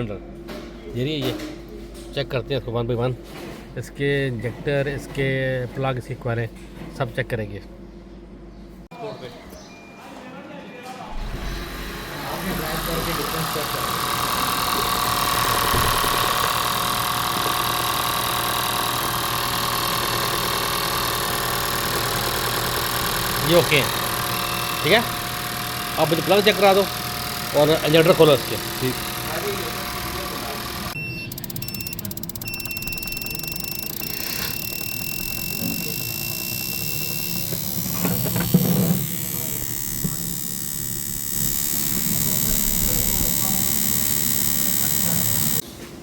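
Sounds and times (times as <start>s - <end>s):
petrol engine idling: 11.2s - 45.6s
thin high whine: 23.4s - 45.6s.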